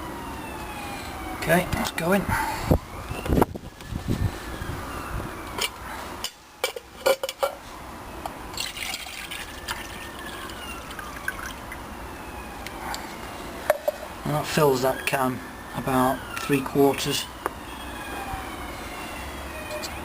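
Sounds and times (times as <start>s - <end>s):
water pouring into metal can: 8.5s - 11.8s.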